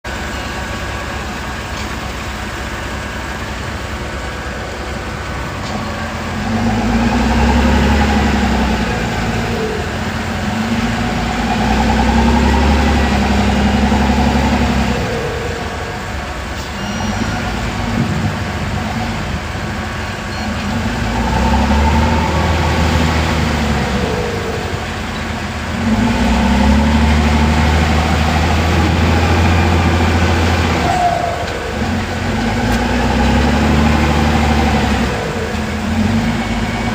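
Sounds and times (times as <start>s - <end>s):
heavy diesel engine revving: 0.0s - 36.9s.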